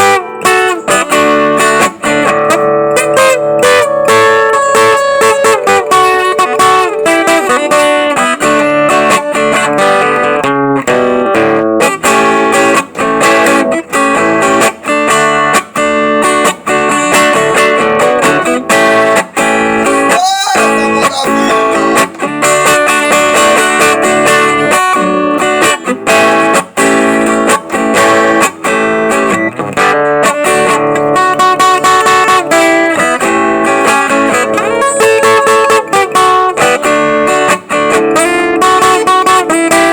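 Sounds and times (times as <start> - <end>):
acoustic guitar plucking: 0.0 - 39.9
guitar sliding note: 19.9 - 22.9, 34.3 - 37.1.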